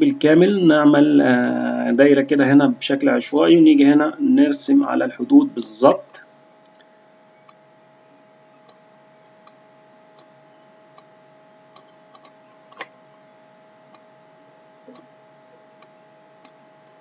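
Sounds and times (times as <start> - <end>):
faint electrical hum: 0.0 - 17.0
computer mouse clicking: 11.8 - 12.9.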